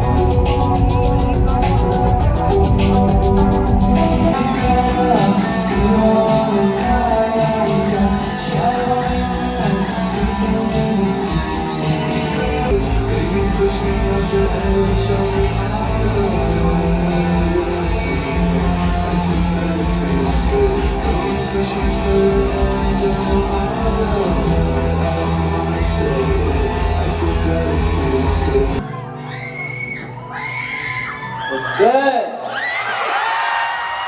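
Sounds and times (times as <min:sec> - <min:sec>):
rock band music: 0:00.0 - 0:29.0.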